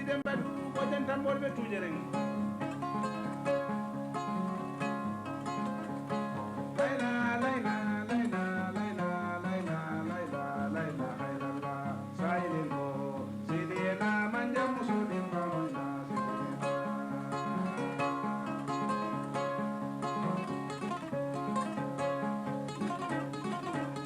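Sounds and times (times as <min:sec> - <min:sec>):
plucked harp-lute pattern: 0:00.0 - 0:24.0
person singing wavering phrases: 0:06.8 - 0:16.6.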